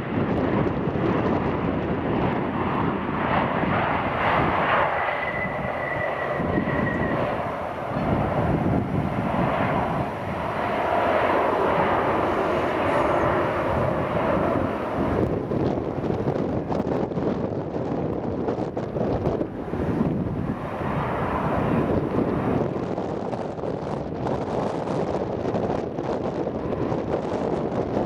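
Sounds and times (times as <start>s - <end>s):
jet airliner engine noise: 0.0s - 28.0s
faint high whine: 4.9s - 14.3s.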